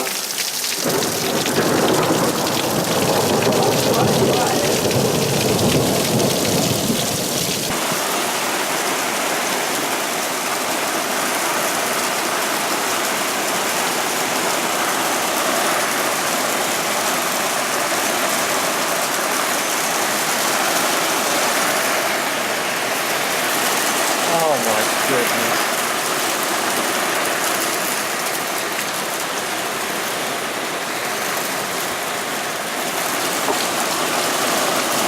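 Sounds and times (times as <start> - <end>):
heavy rain pouring: 0.0 - 35.0
low thunder rumble: 0.9 - 7.8.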